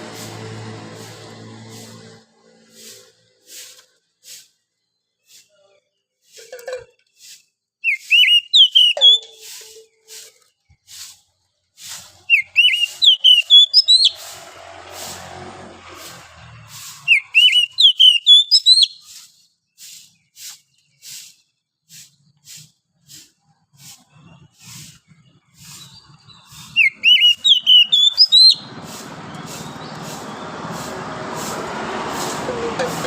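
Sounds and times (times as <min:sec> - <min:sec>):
bird singing whistled notes: 0:07.8 - 0:10.1, 0:12.2 - 0:14.2, 0:17.0 - 0:21.5, 0:24.2 - 0:28.7
sharp high chirps: 0:12.2 - 0:14.2, 0:25.8 - 0:28.7.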